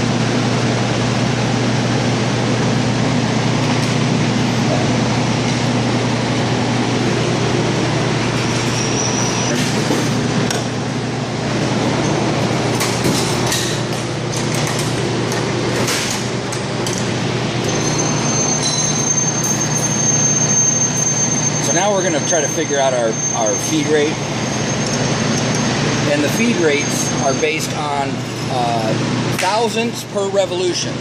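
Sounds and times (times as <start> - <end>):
machine hum: 0.0 - 31.0
thin high whine: 6.6 - 10.3, 17.6 - 28.9.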